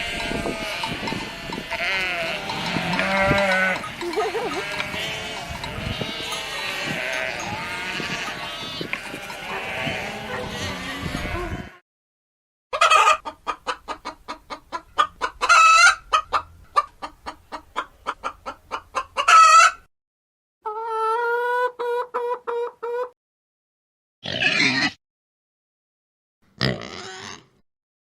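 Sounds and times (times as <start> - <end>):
chicken cackling: 0.0 - 11.8, 12.7 - 19.9, 20.6 - 23.2
chicken clucking: 3.0 - 8.9, 12.7 - 19.8, 20.6 - 23.2.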